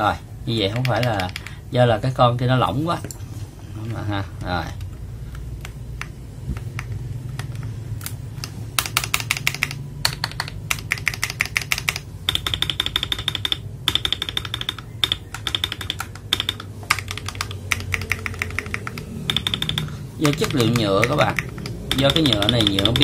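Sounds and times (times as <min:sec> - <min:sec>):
mechanical keyboard typing: 0:00.6 - 0:01.6, 0:04.8 - 0:07.7, 0:08.4 - 0:23.0.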